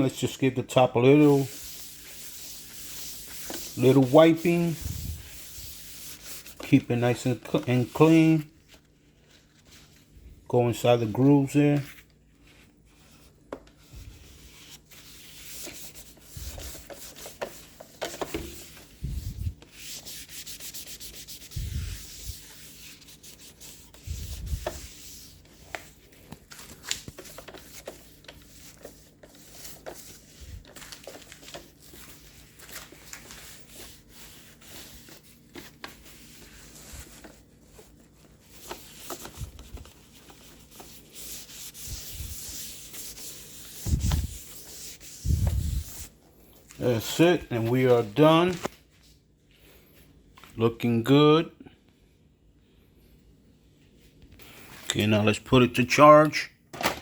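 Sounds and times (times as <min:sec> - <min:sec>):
cloth wiping plastic: 0:00.0 - 0:49.1.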